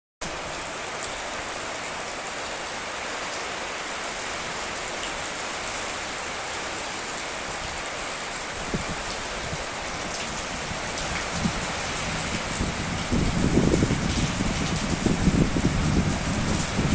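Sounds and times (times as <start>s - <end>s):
strong wind blowing: 8.5s - 16.9s.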